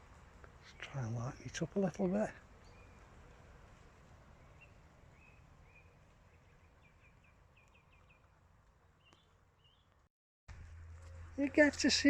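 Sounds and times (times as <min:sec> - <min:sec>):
small bird chirping: 0:00.6 - 0:03.1, 0:04.4 - 0:08.4, 0:09.0 - 0:10.0.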